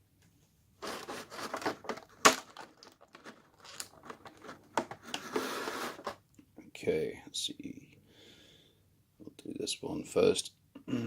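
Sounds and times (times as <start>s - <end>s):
plastic packaging crinkling: 0.8s - 6.2s.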